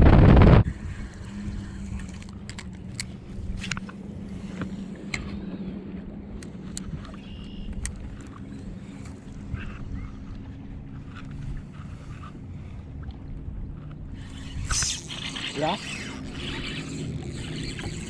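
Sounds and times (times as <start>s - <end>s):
boat motor humming: 0.0s - 18.0s.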